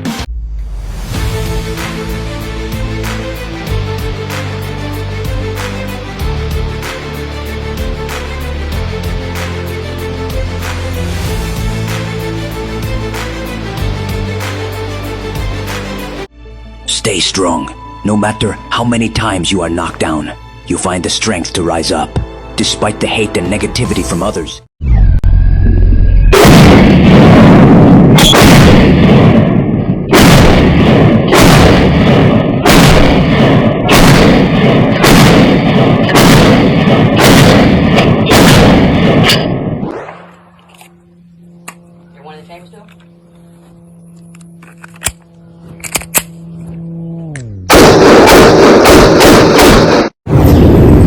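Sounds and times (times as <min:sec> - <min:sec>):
gunshots with long echo: 0:26.3 - 0:40.3, 0:47.7 - 0:50.2
rapid gunfire: 0:26.4 - 0:29.5, 0:30.1 - 0:39.2, 0:47.7 - 0:50.2
steady hum: 0:38.6 - 0:50.2.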